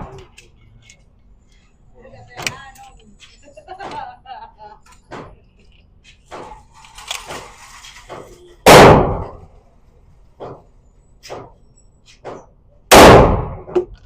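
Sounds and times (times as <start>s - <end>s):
loud gunshots with echo: 8.6s - 9.5s, 12.9s - 13.7s
faint distant gunshots: 8.7s - 9.4s, 12.9s - 13.7s.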